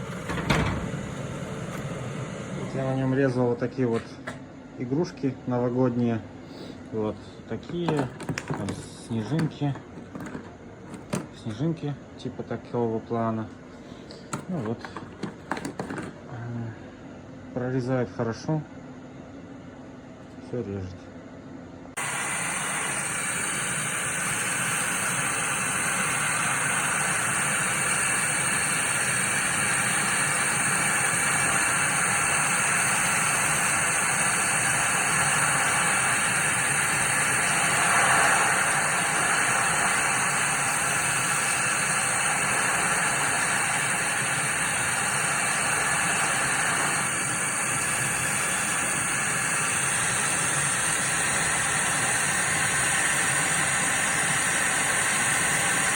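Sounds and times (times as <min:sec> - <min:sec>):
laser cutter hissing and whining: 0:00.0 - 0:03.8, 0:22.0 - 0:55.9.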